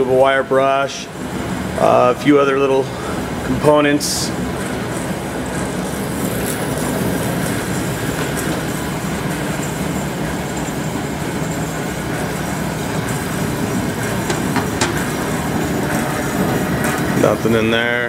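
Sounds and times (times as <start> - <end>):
band saw running: 5.6 - 18.0.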